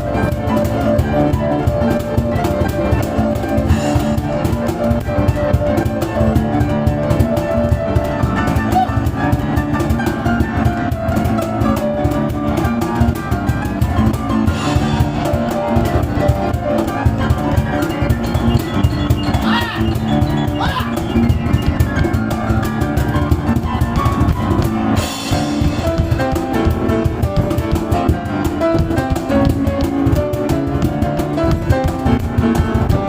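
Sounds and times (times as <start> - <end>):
cajon beating fast rhythm: 0.0 - 33.0
grand piano improvising: 0.0 - 33.0.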